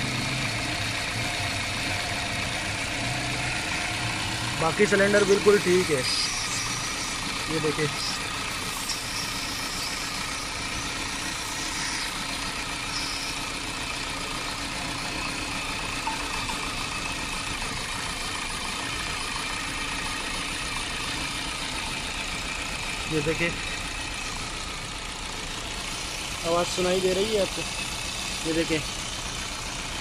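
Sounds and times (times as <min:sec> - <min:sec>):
car engine idling with misfire: 0:00.0 - 0:30.0.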